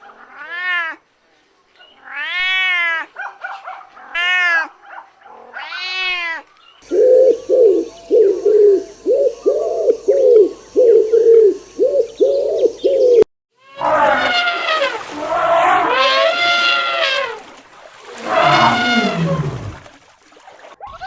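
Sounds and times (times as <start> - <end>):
bird cooing: 6.8 - 13.3.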